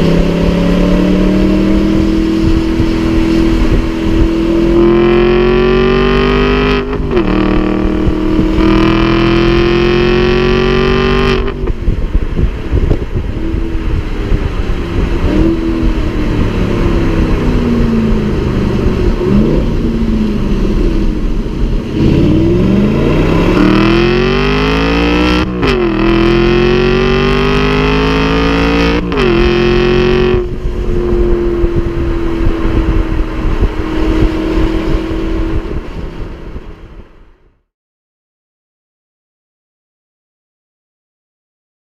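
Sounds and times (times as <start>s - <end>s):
car engine accelerating: 0.0s - 37.6s.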